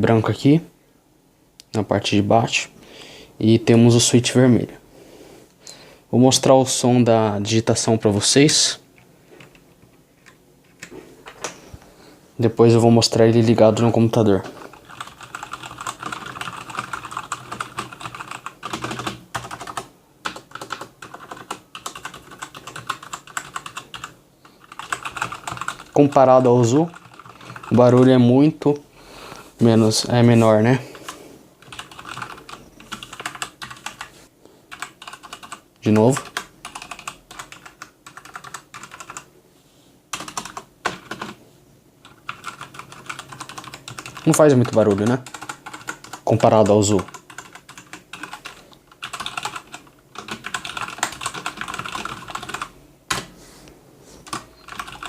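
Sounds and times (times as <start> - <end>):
mechanical keyboard typing: 14.7 - 28.1, 31.6 - 34.1, 34.7 - 39.3, 40.1 - 41.4, 42.0 - 53.3, 54.2 - 55.0.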